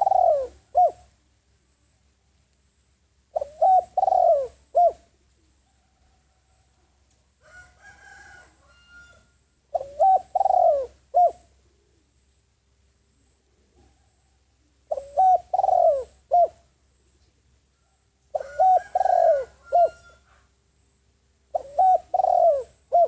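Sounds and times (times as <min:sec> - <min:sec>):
dove cooing: 0:00.0 - 0:01.2, 0:03.3 - 0:06.5, 0:08.1 - 0:12.2, 0:14.6 - 0:16.7, 0:18.3 - 0:20.5, 0:21.5 - 0:23.0.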